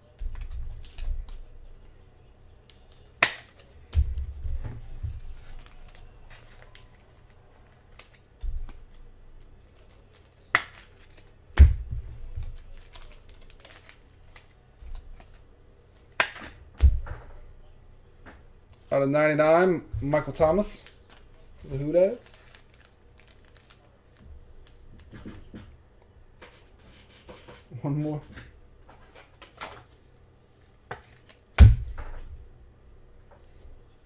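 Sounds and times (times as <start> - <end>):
cards and wrappers rustling: 0.1 - 17.5, 18.7 - 25.5, 30.6 - 31.5.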